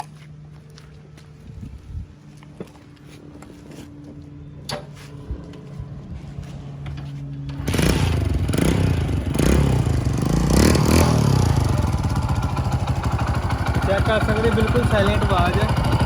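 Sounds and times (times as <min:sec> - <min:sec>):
motorcycle engine revving: 0:06.6 - 0:16.0.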